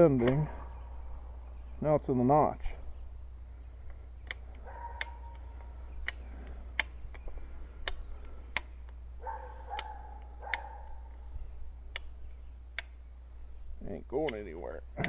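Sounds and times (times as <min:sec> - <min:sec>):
fence stretcher metallic clicks: 0:03.9 - 0:09.0.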